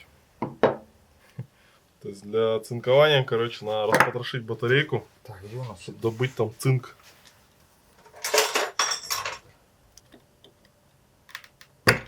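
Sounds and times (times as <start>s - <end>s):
metal tools clattering: 8.0s - 9.5s.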